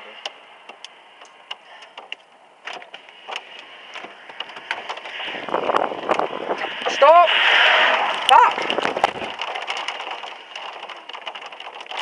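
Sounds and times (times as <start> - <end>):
hailstones ticking: 0.2 - 7.0, 7.9 - 12.0
rushing noise: 3.0 - 12.0.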